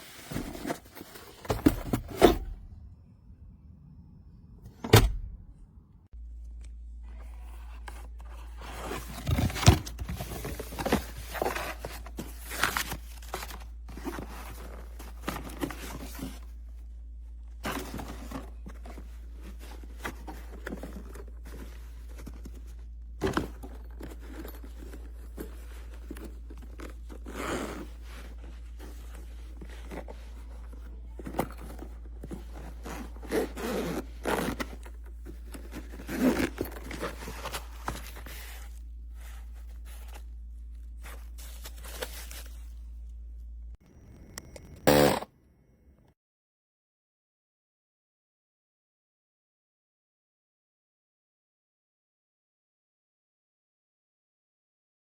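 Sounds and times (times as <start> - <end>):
handling scrapes and rustles: 0.0 - 2.8, 7.0 - 43.6
zipper-like noises: 44.1 - 45.3.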